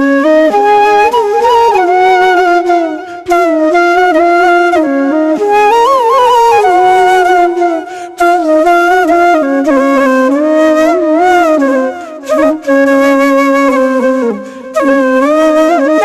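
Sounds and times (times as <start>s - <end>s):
solo flute melody: 0.0s - 16.0s.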